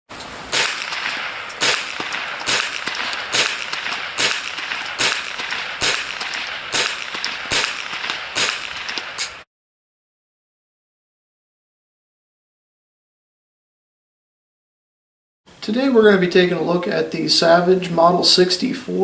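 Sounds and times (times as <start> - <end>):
rifle shots: 0.5 - 9.4.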